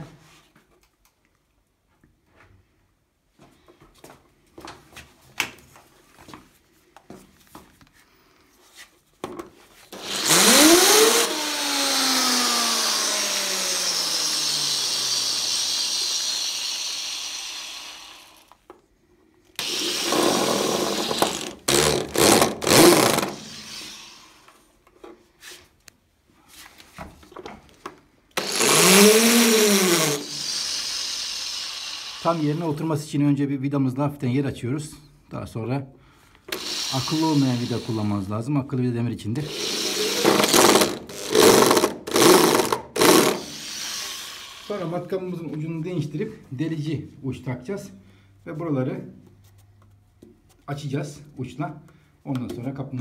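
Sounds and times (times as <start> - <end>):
electric drill driving screw: 9.9 - 18.6, 19.6 - 24.6, 28.4 - 32.8, 36.5 - 38.2, 39.4 - 45.0.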